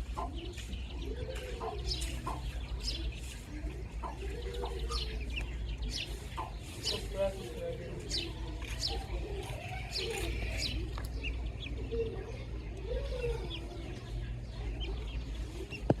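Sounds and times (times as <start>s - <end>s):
baby chicks peeping: 0.0s - 16.0s
bird cooing: 0.1s - 5.3s, 8.0s - 14.1s.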